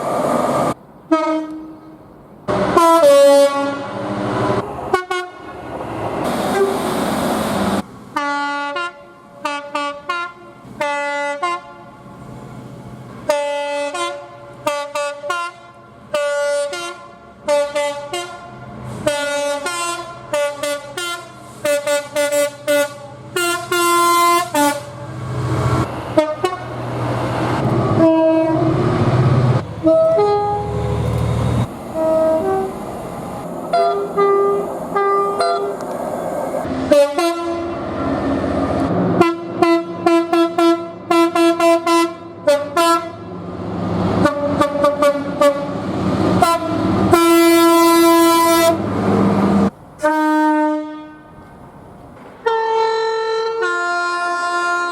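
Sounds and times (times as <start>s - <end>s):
moving trains rumbling: 0.0s - 54.9s
train horn blasts: 1.1s - 5.5s, 8.2s - 11.9s, 13.3s - 25.0s, 26.1s - 26.8s, 27.9s - 28.9s, 29.8s - 31.0s, 32.0s - 32.8s, 33.7s - 35.7s, 36.8s - 38.0s, 39.2s - 43.4s, 44.2s - 45.8s, 46.4s - 48.9s, 50.0s - 51.4s, 52.4s - 54.9s.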